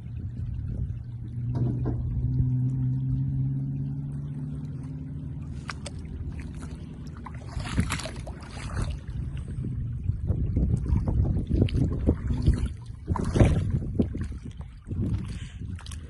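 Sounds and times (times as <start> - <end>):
vehicle engine humming: 0.0 - 10.5
low rumbling: 0.0 - 16.0
splashing water: 0.0 - 16.0.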